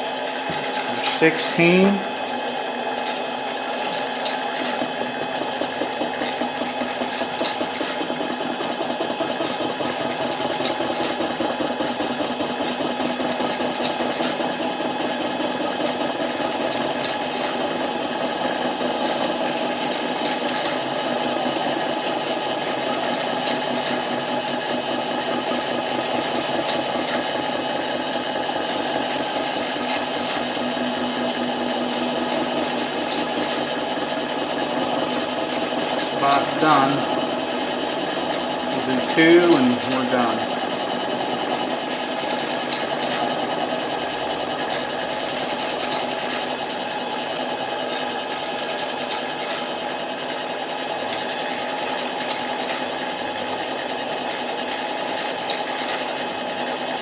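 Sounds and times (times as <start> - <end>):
thin high whine: 0.0 - 5.6, 20.2 - 52.0
lathe motor humming: 0.0 - 57.0.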